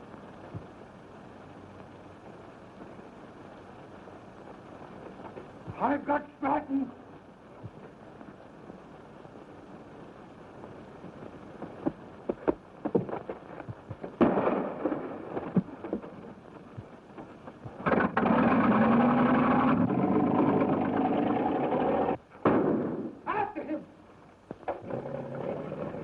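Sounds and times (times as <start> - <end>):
loud steady rumble: 16.4 - 22.3.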